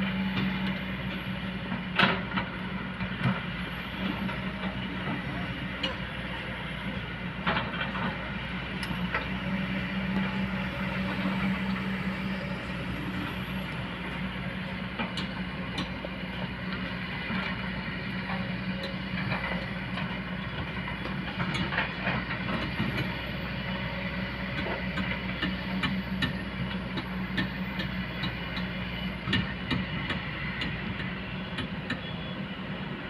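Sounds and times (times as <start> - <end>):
excavator diesel engine humming: 0.0 - 33.0.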